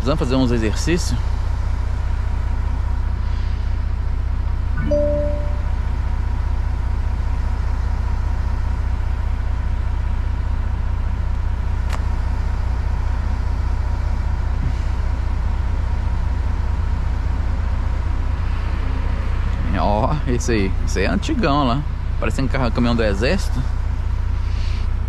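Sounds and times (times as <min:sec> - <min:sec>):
truck diesel engine idling: 0:00.0 - 0:25.0.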